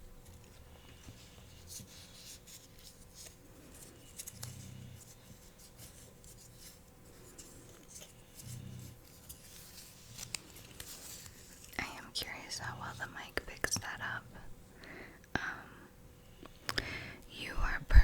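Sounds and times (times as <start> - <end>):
paper crinkling: 0.2 - 8.4, 9.0 - 12.4.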